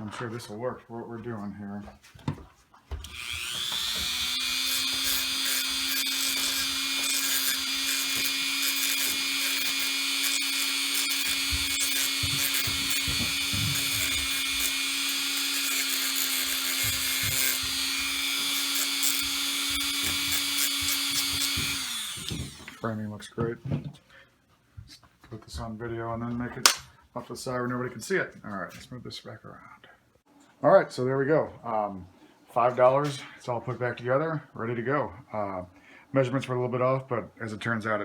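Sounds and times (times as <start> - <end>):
electric power tool whining: 3.0 - 22.8.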